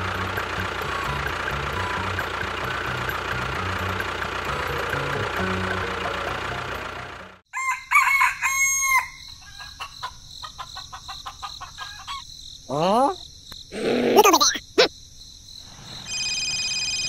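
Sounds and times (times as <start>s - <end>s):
machine engine running: 0.0s - 7.4s
rooster crowing: 7.5s - 9.9s
chickens clucking: 9.5s - 12.2s.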